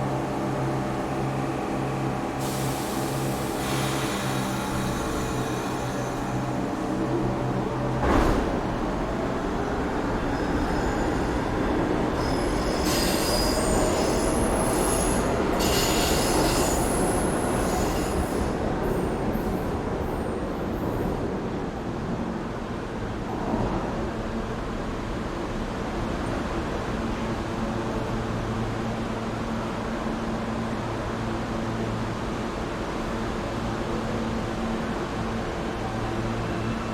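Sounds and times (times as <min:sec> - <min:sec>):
subway train rumbling: 0:00.0 - 0:36.9
train wheels squealing: 0:02.4 - 0:20.2.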